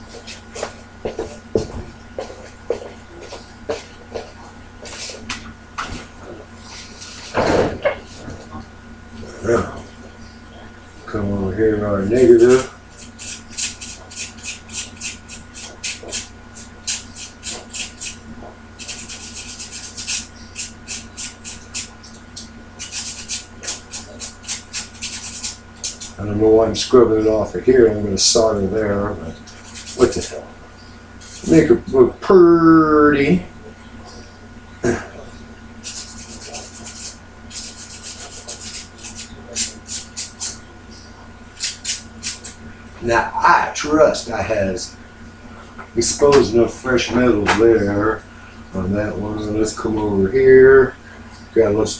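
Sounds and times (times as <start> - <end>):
abrasive scrubbing on metal: 12.1 - 22.0, 22.8 - 26.3, 29.5 - 30.4, 35.8 - 40.6.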